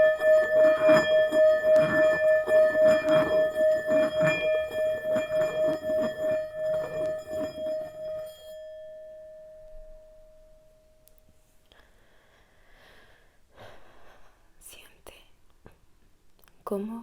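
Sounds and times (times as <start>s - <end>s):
singing bowl ringing: 0.0s - 11.6s.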